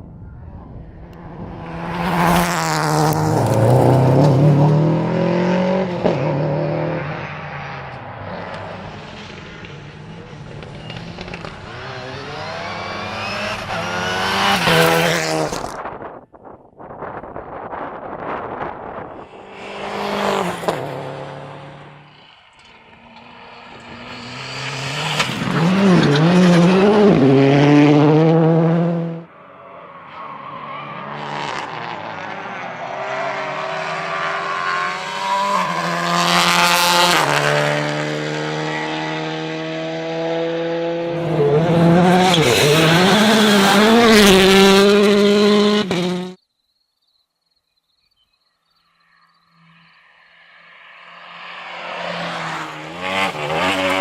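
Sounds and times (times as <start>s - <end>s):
rally car engines revving: 1.1s - 15.9s, 18.5s - 29.3s, 30.1s - 46.4s, 50.6s - 54.0s.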